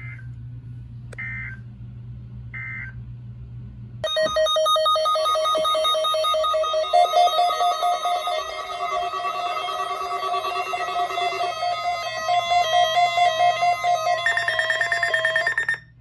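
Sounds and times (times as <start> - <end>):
low hum: 0.0 - 16.0
data chirps: 4.0 - 15.8
loud stepping electronic alert tone: 4.0 - 15.8.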